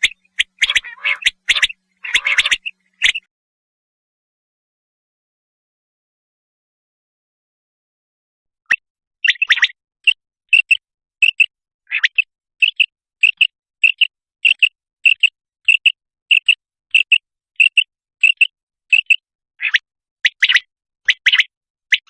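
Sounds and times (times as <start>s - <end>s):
quail calling: 0.0s - 3.2s.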